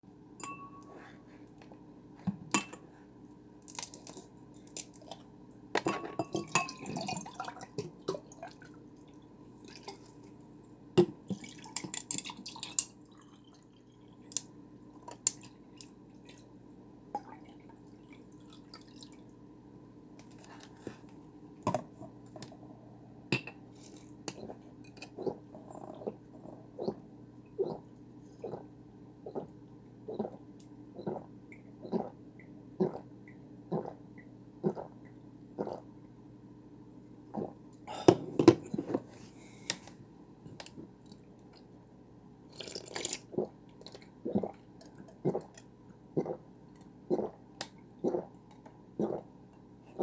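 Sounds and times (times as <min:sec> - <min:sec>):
liquid splashing: 0:42.5 - 0:45.6.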